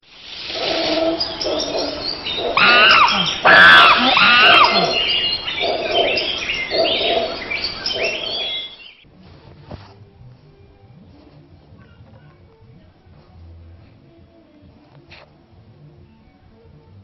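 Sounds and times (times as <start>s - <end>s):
chirping animal calls: 0.3s - 9.0s.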